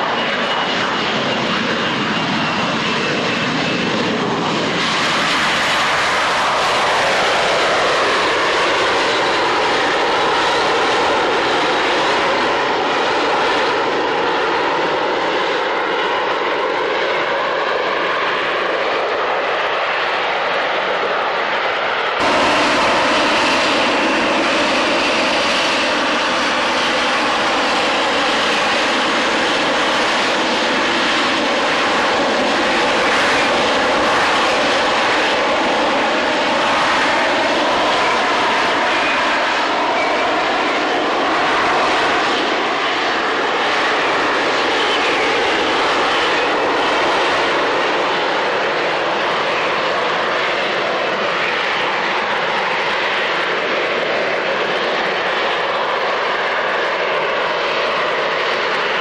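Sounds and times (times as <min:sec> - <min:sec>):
jet engine running: 0:00.0 - 0:59.0.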